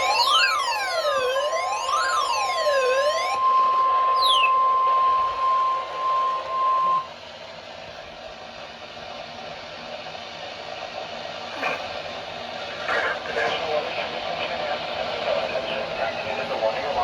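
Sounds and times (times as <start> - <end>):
steady alarm tone: 0.0 - 7.1
brief falling whistle: 3.1 - 7.1.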